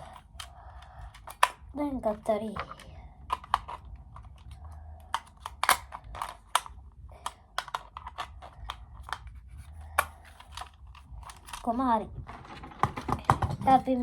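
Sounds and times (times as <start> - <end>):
batteries clicking into plastic compartment: 0.0 - 1.7, 2.5 - 9.3, 9.9 - 11.7.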